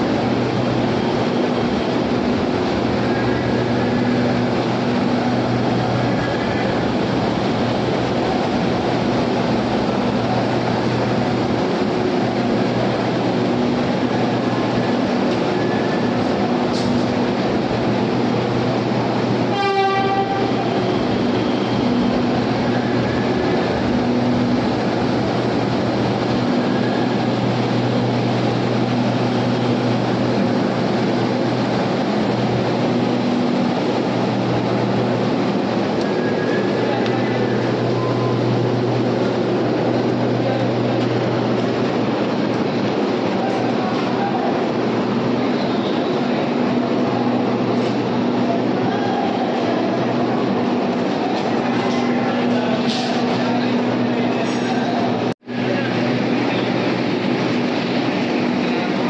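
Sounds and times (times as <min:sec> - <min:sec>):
underground train rumbling: 0:00.0 - 0:59.0
short horn tone: 0:19.5 - 0:20.6.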